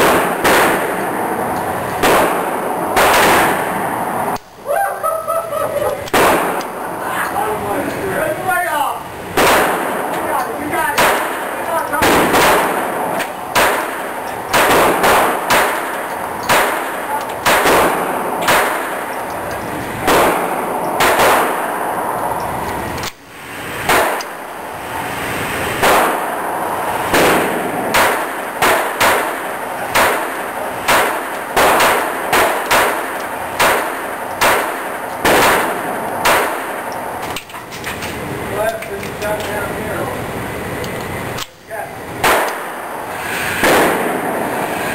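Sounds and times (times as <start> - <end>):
pistol shots: 0.0 - 1.4, 2.0 - 4.0, 6.1 - 6.8, 9.3 - 10.2, 10.9 - 19.2, 20.0 - 22.0, 23.8 - 24.4, 25.8 - 37.0, 42.2 - 44.7.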